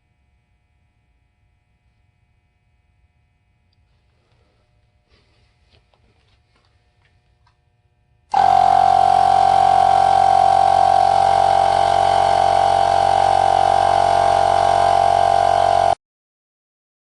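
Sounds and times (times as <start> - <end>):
air compressor motor humming: 8.2 - 16.0.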